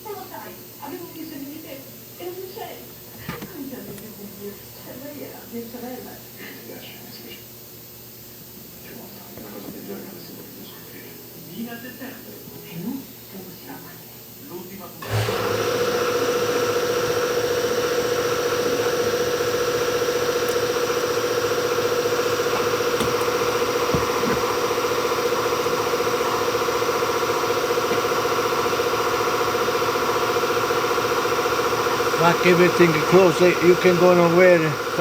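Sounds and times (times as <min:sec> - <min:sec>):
motor whining and humming: 0:15.0 - 0:35.0.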